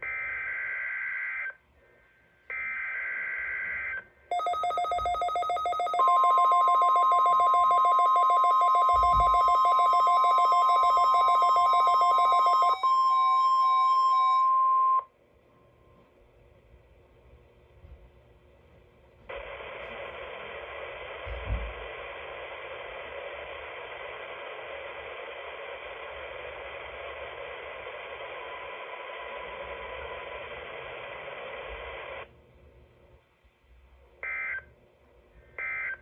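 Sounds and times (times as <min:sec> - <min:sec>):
radio static hiss: 0:19.3 - 0:32.3.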